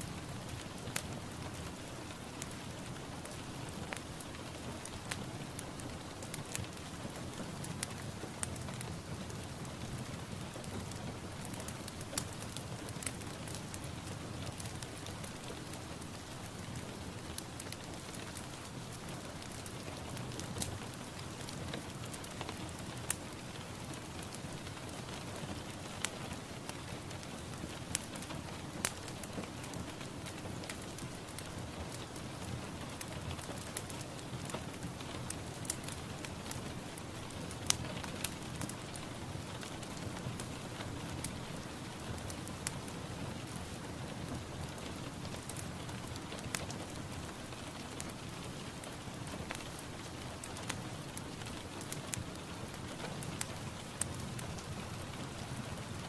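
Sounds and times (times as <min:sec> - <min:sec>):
sharp rain drop ticks: 0:44.3 - 0:56.0.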